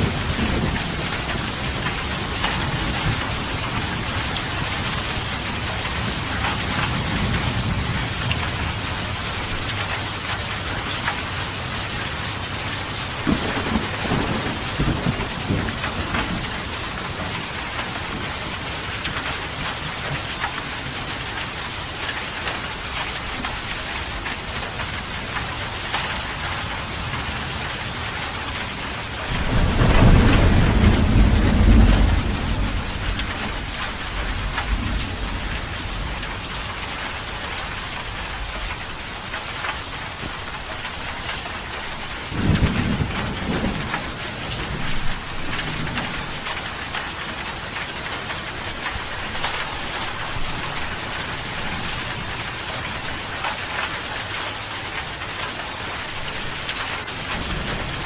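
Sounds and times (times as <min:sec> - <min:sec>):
thunder rumbling: 0:00.0 - 0:21.0, 0:26.3 - 0:47.0
heavy rain pattering: 0:00.0 - 0:58.0.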